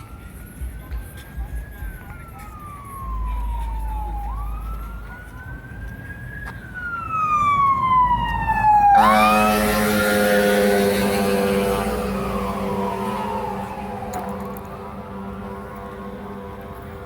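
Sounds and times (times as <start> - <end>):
emergency siren wailing: 0.0 - 17.0
loud steady horn blast: 8.8 - 17.0.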